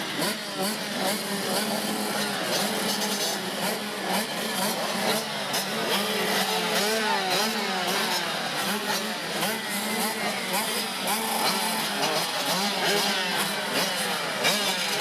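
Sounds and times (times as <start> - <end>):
motocross bikes revving: 0.0 - 15.0.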